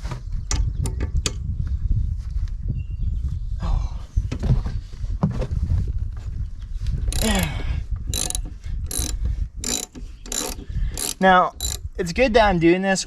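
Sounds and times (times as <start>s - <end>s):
tools knocking and scraping: 7.1s - 7.5s, 8.1s - 11.9s.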